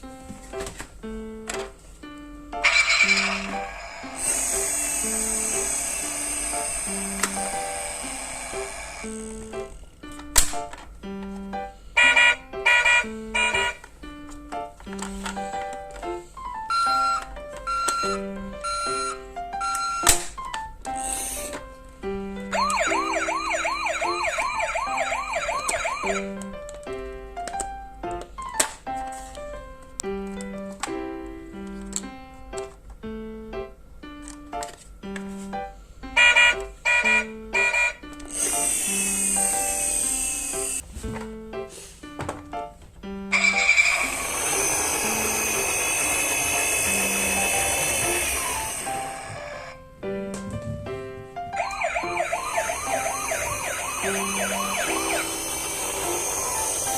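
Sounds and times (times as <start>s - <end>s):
light keyboard music: 0.0s - 56.9s
ambulance siren yelping: 2.6s - 4.3s, 12.0s - 13.8s, 16.7s - 20.2s, 22.5s - 26.3s, 36.2s - 38.0s, 43.3s - 49.8s, 51.6s - 56.9s
toy mechanism whirring: 2.6s - 10.8s, 12.0s - 13.8s, 16.6s - 21.7s, 22.5s - 26.4s, 36.2s - 40.8s, 43.3s - 49.8s, 51.6s - 56.9s.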